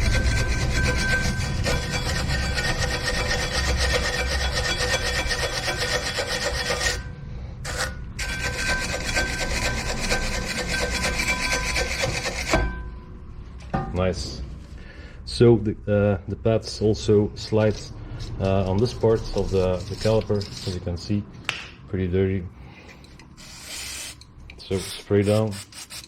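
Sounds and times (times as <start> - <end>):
brush scrubbing metal: 0.0 - 7.0, 7.7 - 12.5, 18.4 - 20.9, 23.4 - 26.0.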